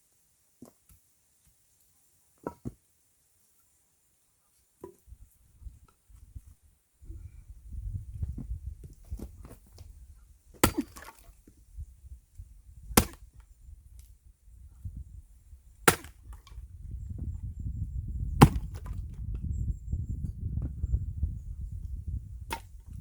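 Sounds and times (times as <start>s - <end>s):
axe chopping strikes: 10.5s - 11.3s, 12.9s - 13.4s, 15.8s - 16.5s, 18.4s - 19.0s, 22.5s - 22.8s
wood splitting crack: 10.6s - 11.3s, 13.0s - 13.4s, 15.8s - 16.6s, 18.4s - 19.1s.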